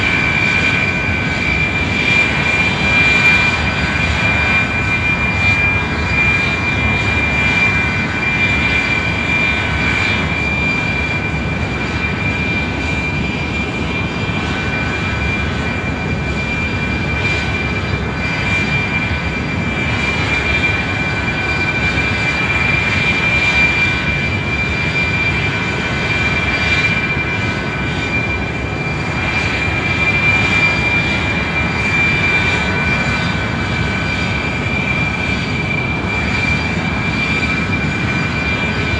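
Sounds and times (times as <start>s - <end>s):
airplane engine rush: 0.0s - 38.9s.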